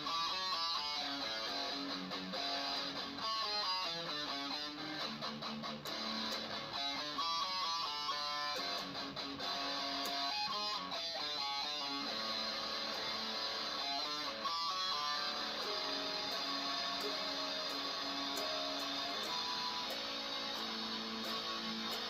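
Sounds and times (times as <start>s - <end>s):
electric guitar riffs: 0.0s - 22.0s.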